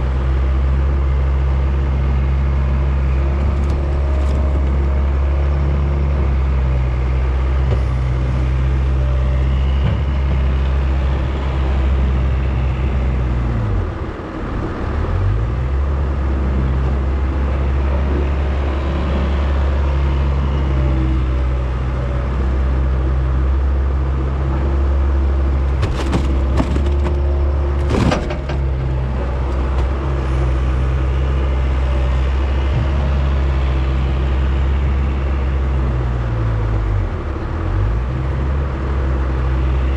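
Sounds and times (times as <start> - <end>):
diesel engine running: 0.0 - 39.9
metal knocks and clanks: 25.7 - 30.0.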